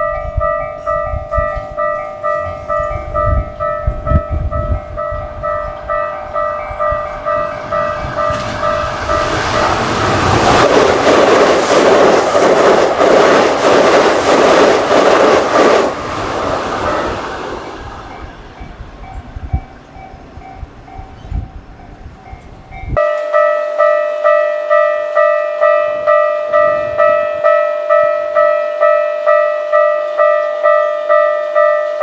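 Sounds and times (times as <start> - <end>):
level crossing bells ringing: 0.0 - 10.7
train wheels clattering over rail joints: 6.9 - 19.2.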